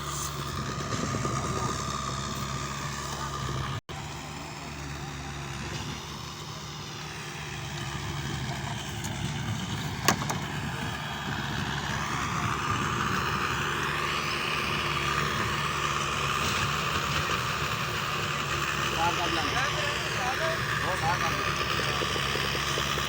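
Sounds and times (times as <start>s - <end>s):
engine running: 0.0s - 23.0s.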